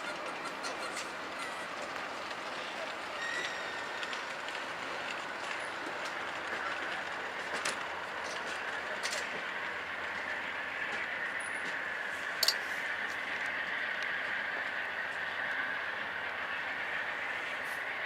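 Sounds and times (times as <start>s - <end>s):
train rolling past: 0.0s - 18.0s.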